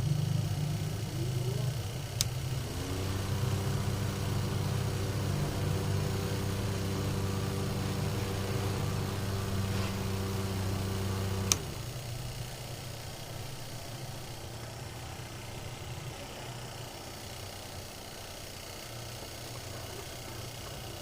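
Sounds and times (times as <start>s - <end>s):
electric motor humming: 0.0s - 21.0s
switch click: 2.1s - 2.6s, 3.2s - 12.0s.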